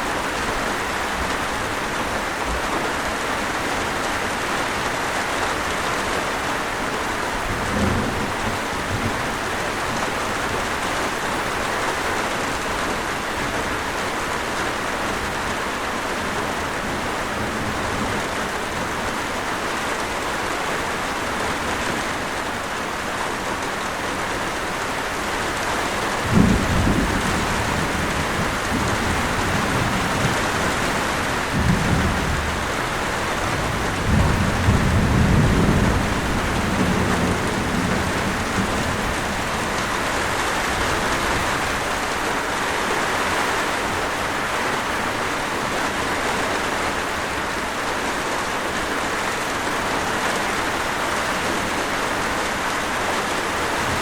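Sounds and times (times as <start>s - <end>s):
heavy rain hissing: 0.0s - 54.0s
thunder: 7.5s - 9.3s, 26.2s - 41.6s.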